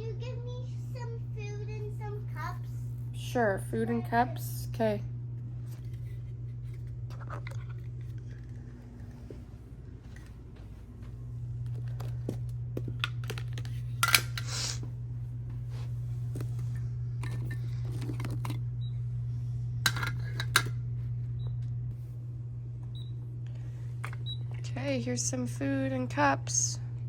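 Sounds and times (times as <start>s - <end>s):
steady low hum: 0.0s - 27.0s
cups and dishes clattering: 17.2s - 18.6s, 19.9s - 20.8s.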